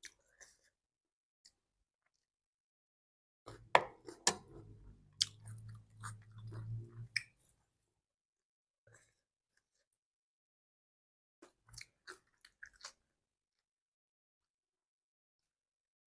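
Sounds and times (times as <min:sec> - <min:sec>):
person chewing and crunching food: 0:00.0 - 0:00.8, 0:03.5 - 0:07.7, 0:11.4 - 0:13.7.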